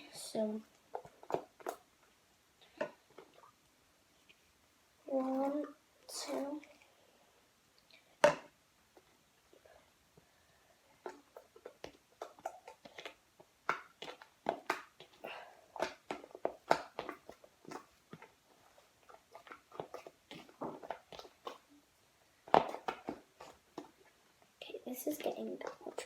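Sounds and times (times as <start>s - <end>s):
slime squelching: 5.0s - 6.8s, 10.9s - 26.0s.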